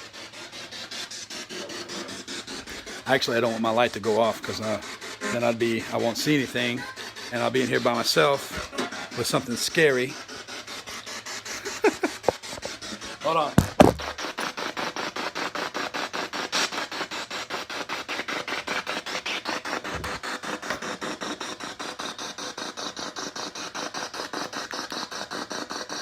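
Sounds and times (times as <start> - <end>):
radio static chopping rapidly: 1.8 - 15.5.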